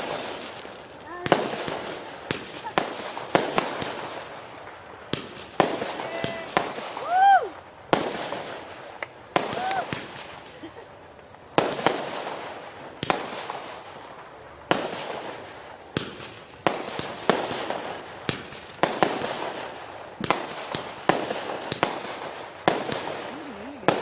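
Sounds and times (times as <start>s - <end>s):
firework bangs: 0.0s - 24.0s.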